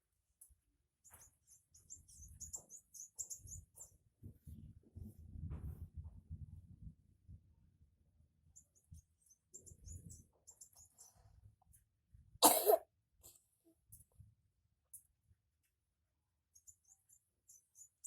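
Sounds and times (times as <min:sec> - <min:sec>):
person coughing: 0:12.4 - 0:12.8.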